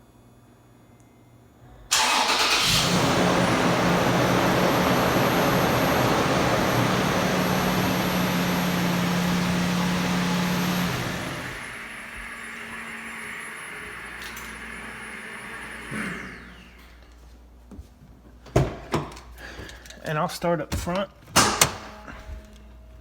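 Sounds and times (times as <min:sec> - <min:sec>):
car engine idling: 0:01.9 - 0:11.8.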